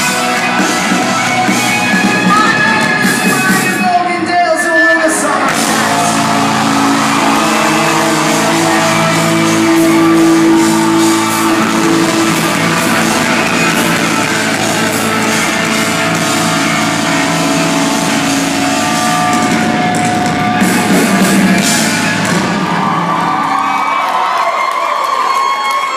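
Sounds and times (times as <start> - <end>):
live pop-rock band playing: 0.0 - 24.6
crowd shouting along: 5.2 - 25.9.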